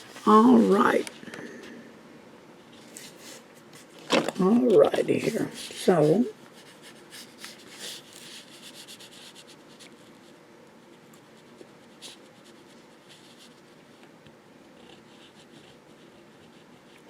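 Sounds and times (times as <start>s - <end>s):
pen scratching on paper: 5.0s - 10.3s, 11.0s - 13.7s, 14.8s - 17.0s.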